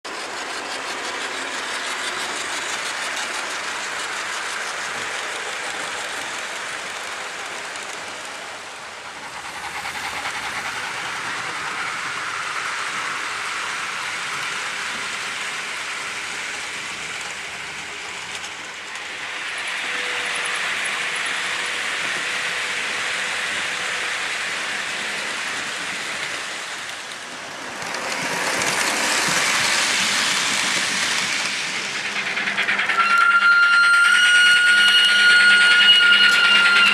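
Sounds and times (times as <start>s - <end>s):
model train motors whirring on rails: 0.1s - 36.9s.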